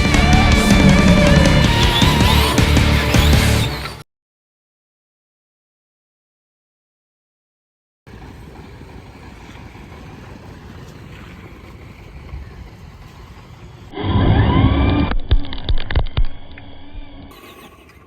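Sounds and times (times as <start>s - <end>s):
toy truck motor whine: 0.8s - 4.0s.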